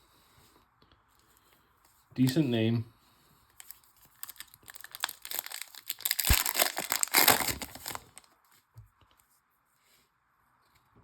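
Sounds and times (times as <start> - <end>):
foil wrapper crinkling and tearing: 3.6 - 8.3.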